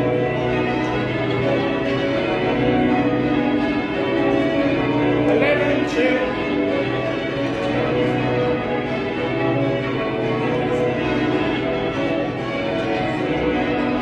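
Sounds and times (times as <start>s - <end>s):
church bells change ringing: 0.0s - 14.0s.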